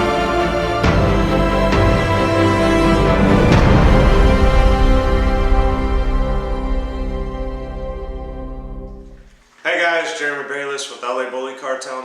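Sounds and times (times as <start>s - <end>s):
sharp hit: 0.0s - 9.3s
music with sustained chords: 0.0s - 9.4s.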